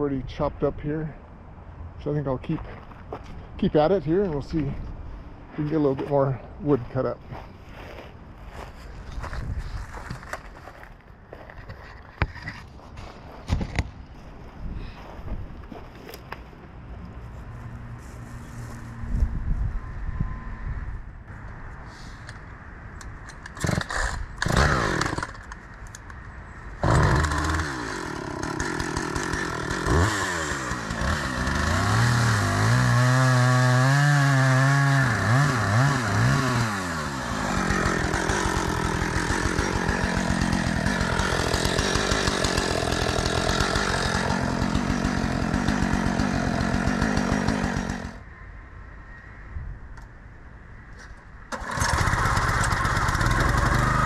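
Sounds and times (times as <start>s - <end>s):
log splitter engine running: 26.8s - 48.2s, 51.5s - 54.0s.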